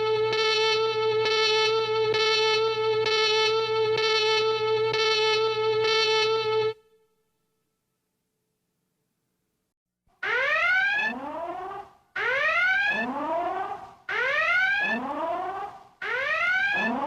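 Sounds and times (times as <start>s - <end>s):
rising whooping alarm: 0.0s - 6.8s, 10.2s - 17.0s.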